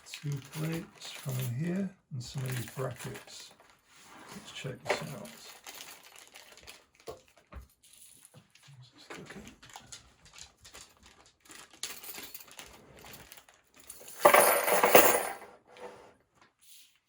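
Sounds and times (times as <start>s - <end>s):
metal parts clattering: 11.5s - 15.5s
metal plates clinking and rattling: 14.1s - 15.5s.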